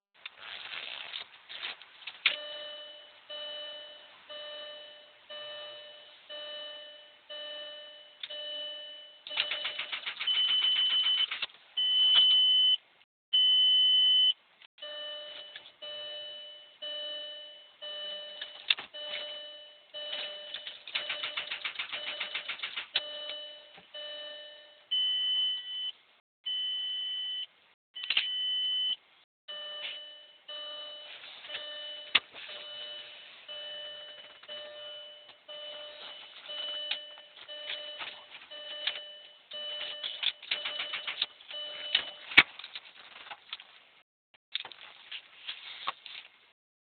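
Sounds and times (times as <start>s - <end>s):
car dashboard warning chime: 2.4s - 9.6s, 14.8s - 20.6s, 29.5s - 42.2s.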